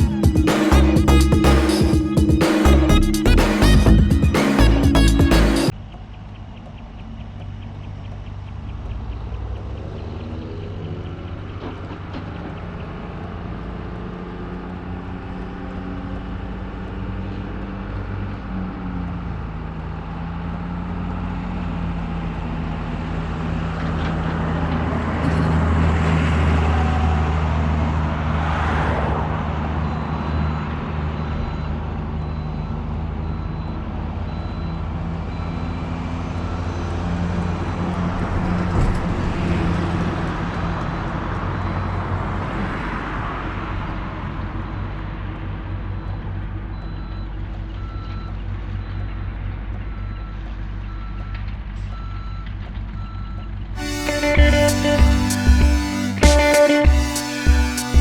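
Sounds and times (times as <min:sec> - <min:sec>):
truck engine running: 0:00.0 - 0:05.7, 0:53.8 - 0:58.0
road noise: 0:00.0 - 0:46.7, 0:53.7 - 0:58.0.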